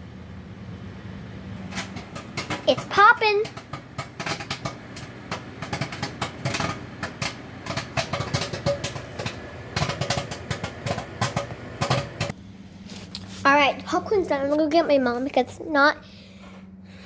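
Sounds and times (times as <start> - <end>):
microwave oven humming: 0.0 - 12.8
popcorn popping: 1.6 - 12.4.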